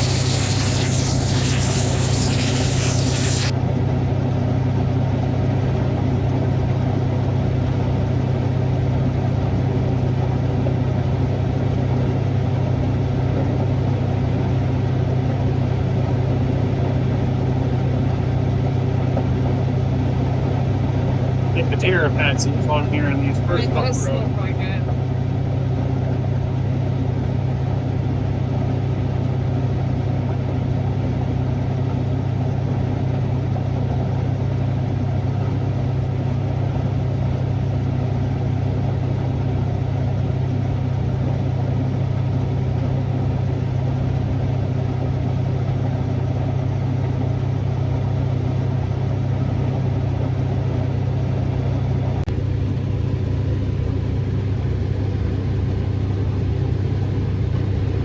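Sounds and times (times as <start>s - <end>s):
heavy machine engine droning: 21.5s - 25.2s.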